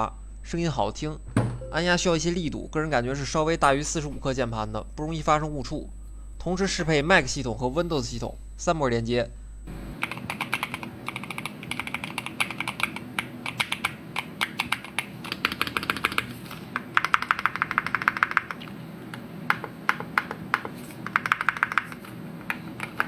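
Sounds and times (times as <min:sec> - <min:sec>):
keyboard typing: 0:10.0 - 0:18.7, 0:19.5 - 0:23.0.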